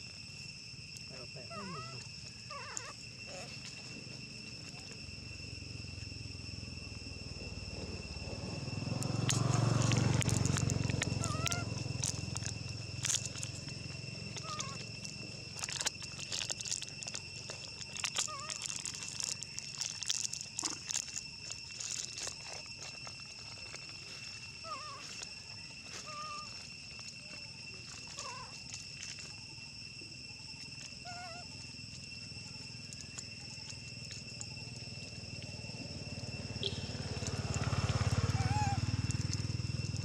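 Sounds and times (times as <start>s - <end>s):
two-pitched insect drone: 0.0s - 40.0s
monkeys squeaking: 1.2s - 3.8s, 9.0s - 21.0s, 26.0s - 26.6s, 28.1s - 28.6s, 31.0s - 31.5s, 36.4s - 40.0s
clicks and rustles: 9.0s - 27.2s.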